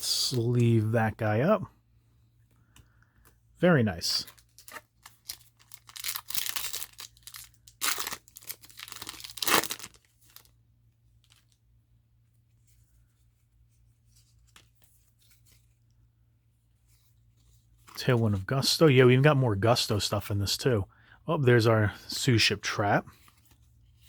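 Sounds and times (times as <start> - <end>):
foil wrapper tearing and crinkling: 4.4 - 10.5.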